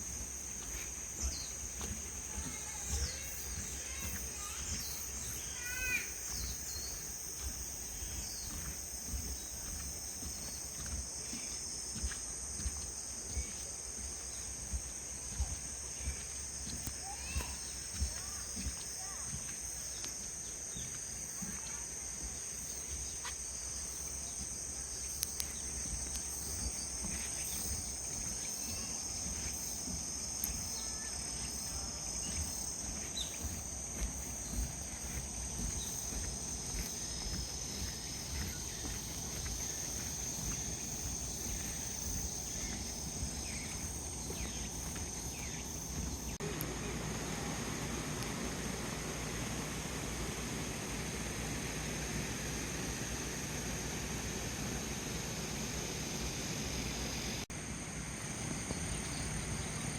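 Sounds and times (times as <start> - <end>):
high-pitched insect chorus: 0.0 - 59.9.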